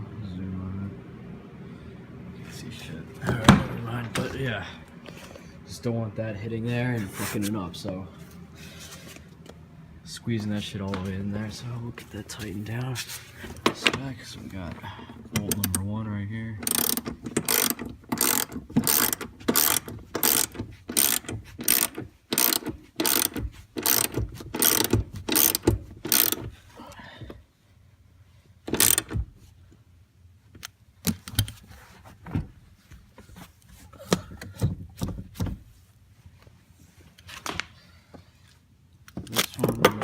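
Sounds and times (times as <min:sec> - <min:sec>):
ratchet wrench clicking: 0:16.6 - 0:26.5, 0:28.7 - 0:29.1.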